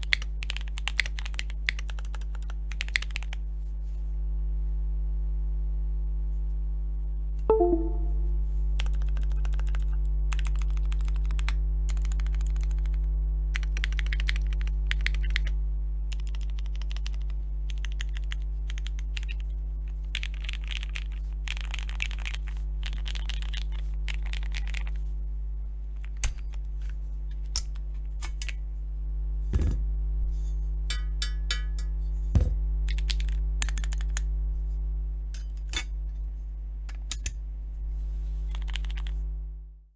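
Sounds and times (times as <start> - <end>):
mechanical keyboard typing: 0.0 - 3.4, 8.8 - 13.0, 13.6 - 15.2, 32.9 - 34.2
steady low hum: 19.4 - 39.8.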